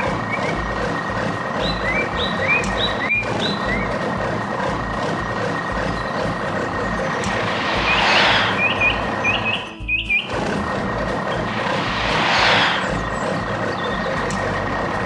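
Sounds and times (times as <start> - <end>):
heavy machinery rumbling: 0.0 - 15.0
high whine: 6.3 - 13.8
hissing swell: 6.4 - 9.8, 10.5 - 13.7.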